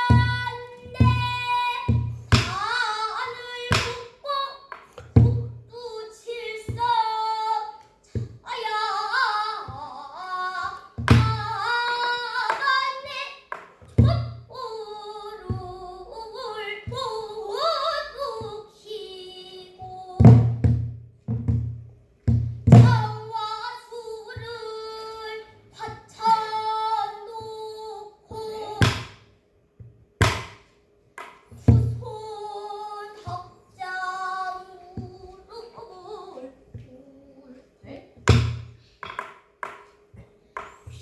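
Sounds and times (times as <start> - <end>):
barrel drum thumps: 0.0 - 2.8, 3.4 - 4.0, 4.7 - 5.7, 6.7 - 7.0, 8.1 - 8.5, 10.6 - 11.8, 13.5 - 14.6, 15.4 - 16.2, 16.8 - 17.3, 20.2 - 23.3, 28.3 - 32.2, 35.0 - 35.4, 38.2 - 41.0
child singing: 0.0 - 20.7, 22.7 - 29.1, 31.5 - 38.4
knocks on drum rim: 1.9 - 2.7, 11.0 - 11.5, 30.2 - 30.6, 38.3 - 39.9.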